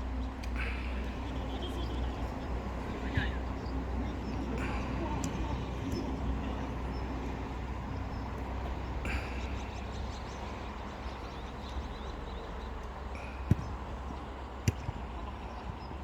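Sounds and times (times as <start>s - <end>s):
steady low rumble: 0.0s - 16.0s
football kick thud: 13.5s - 13.7s.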